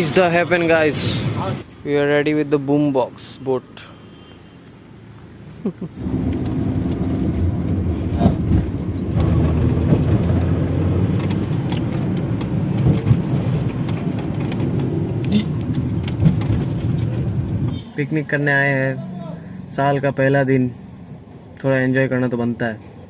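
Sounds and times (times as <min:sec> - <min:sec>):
vehicle engine and road noise: 0:00.0 - 0:23.0
knocks and rattles: 0:06.1 - 0:17.7.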